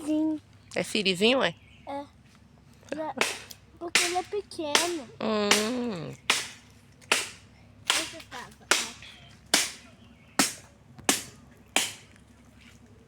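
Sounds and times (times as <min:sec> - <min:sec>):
chopping into wooden log: 0:03.2 - 0:12.2.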